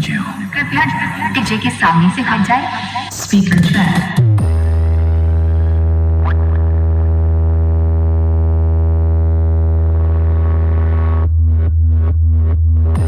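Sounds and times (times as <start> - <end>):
deep bass drone: 4.2 - 13.0.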